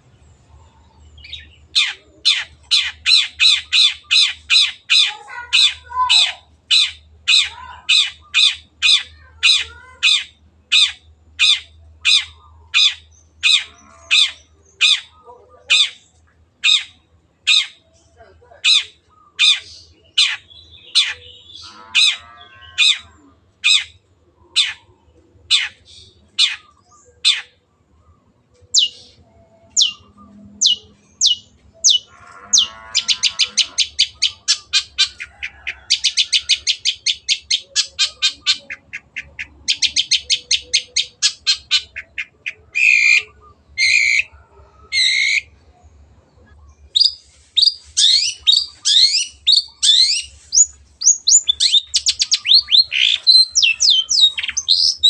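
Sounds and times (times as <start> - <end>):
shrike singing: 28.7 - 45.6, 46.5 - 55.0.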